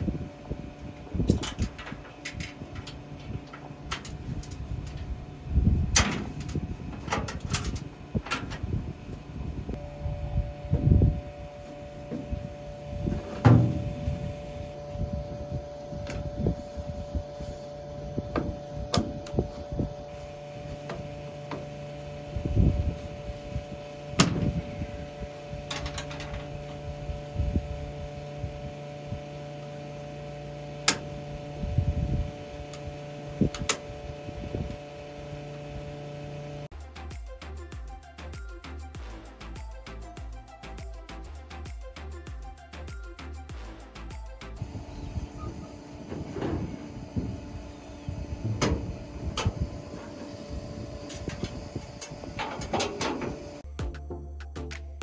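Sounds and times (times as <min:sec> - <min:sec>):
combine harvester humming: 0:00.0 - 0:36.7, 0:43.5 - 0:53.7
metal knocks and clanks: 0:13.1 - 0:14.1, 0:48.4 - 0:50.2, 0:51.1 - 0:54.2.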